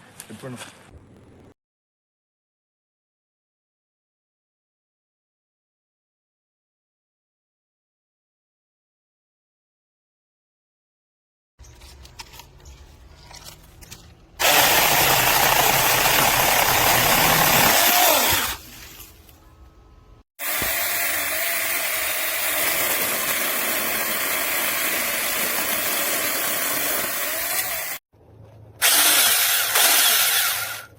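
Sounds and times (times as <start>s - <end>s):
electric chainsaw cutting wood: 14.4s - 18.6s, 20.4s - 28.0s, 28.8s - 30.9s.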